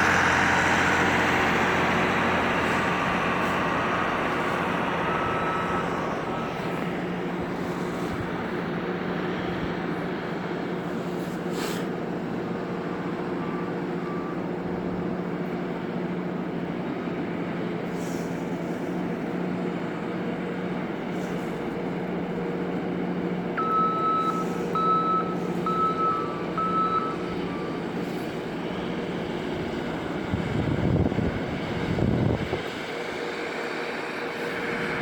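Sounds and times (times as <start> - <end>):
heavy diesel engine running: 0.0 - 35.0
short high warning beeps: 5.1 - 6.1, 23.6 - 28.3.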